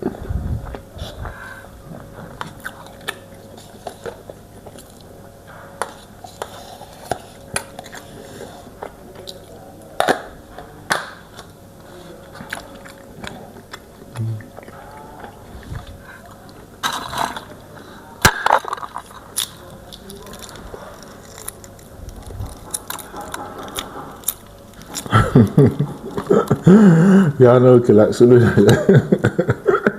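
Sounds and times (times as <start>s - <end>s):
chewing and mouth sounds: 0.1s - 5.2s, 12.2s - 16.7s, 18.6s - 26.6s.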